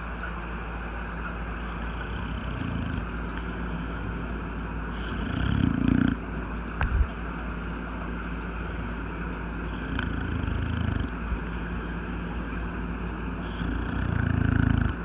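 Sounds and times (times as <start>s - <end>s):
dog snoring: 1.9s - 3.2s, 4.9s - 6.2s, 9.7s - 11.7s, 13.4s - 15.0s.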